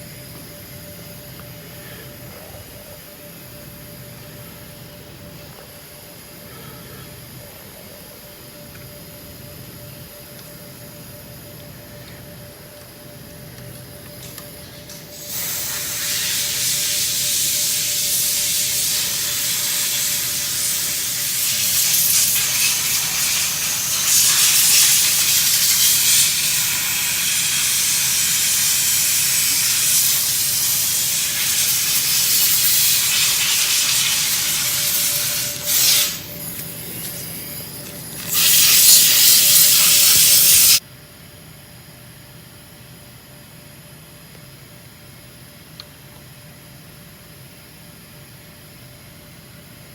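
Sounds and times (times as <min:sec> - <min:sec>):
pressurised spray hissing: 0:15.2 - 0:40.8.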